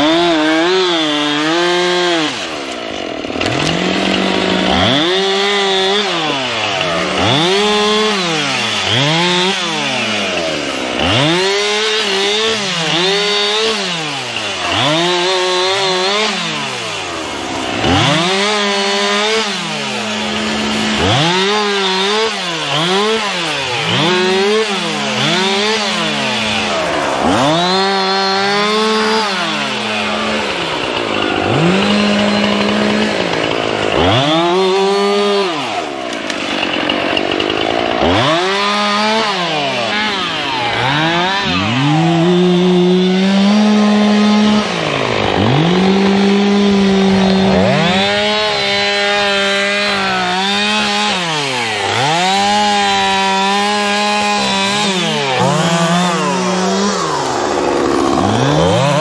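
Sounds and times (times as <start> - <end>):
chainsaw revving cutting wood: 0.0 - 59.0.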